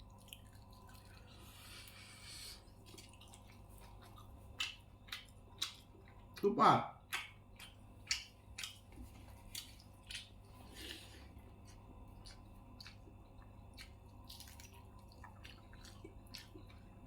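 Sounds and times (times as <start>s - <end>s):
chewing with mouth clicks: 0.0s - 17.0s
low steady hum: 0.0s - 17.0s.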